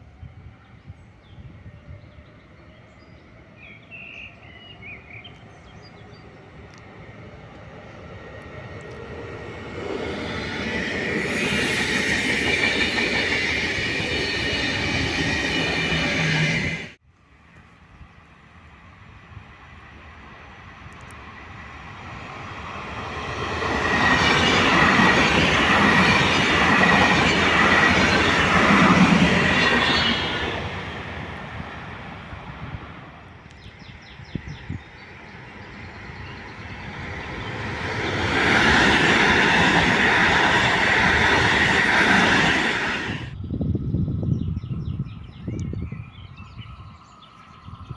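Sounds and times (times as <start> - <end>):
train wheels rushing on rail: 4.3 - 17.0, 19.4 - 43.4
high squeal: 10.6 - 16.9.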